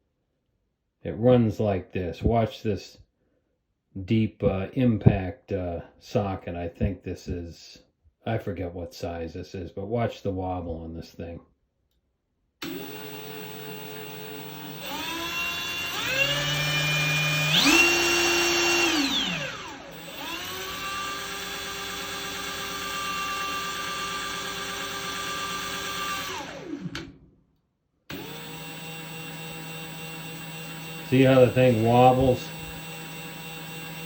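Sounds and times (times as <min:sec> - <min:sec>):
impact wrench motor whirring: 0:12.6 - 0:27.2, 0:28.1 - 0:34.0.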